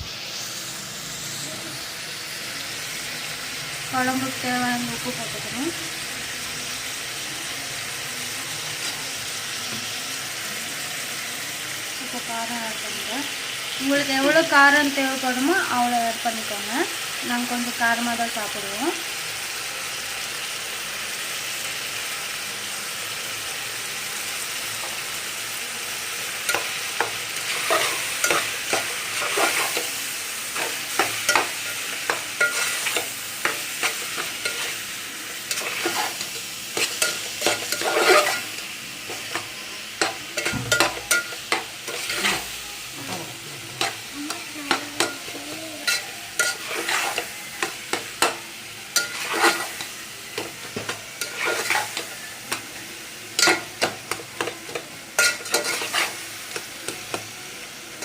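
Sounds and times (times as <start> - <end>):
sauce sizzling in hot oil: 0.0 - 58.0
spoon scraping and knocking pan: 26.4 - 52.7, 53.3 - 57.4.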